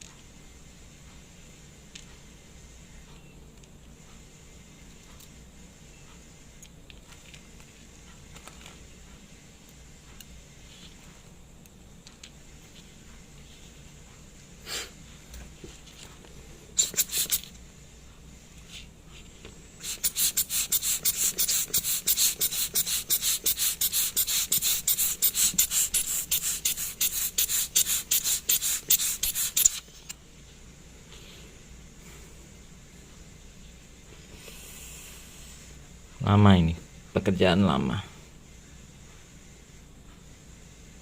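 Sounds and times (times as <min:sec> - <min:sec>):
rapid scrubbing strokes: 0:19.8 - 0:29.8.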